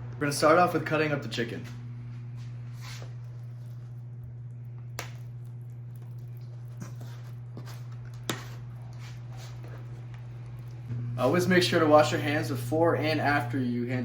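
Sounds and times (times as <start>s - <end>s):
steady low hum: 0.0s - 14.0s.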